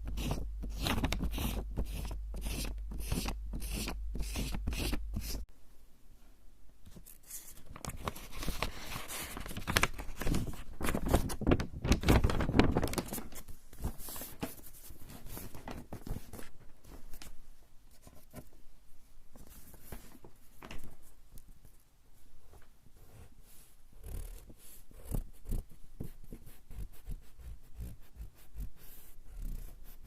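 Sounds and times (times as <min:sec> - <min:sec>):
eraser rubbing on coarse paper: 0:00.1 - 0:05.4.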